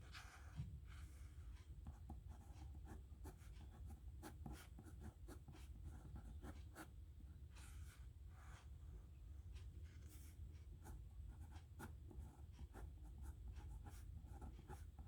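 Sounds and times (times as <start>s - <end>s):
nib pen scratching on paper: 10.8s - 15.0s.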